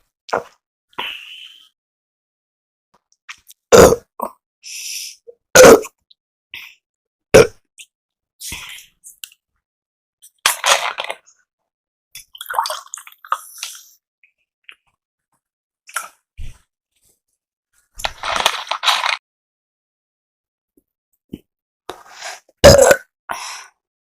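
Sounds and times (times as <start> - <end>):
person burping: 3.7 - 4.4, 5.5 - 6.0, 7.3 - 7.7, 22.6 - 23.1
breathing and mouth noises: 12.7 - 14.0, 21.9 - 22.6.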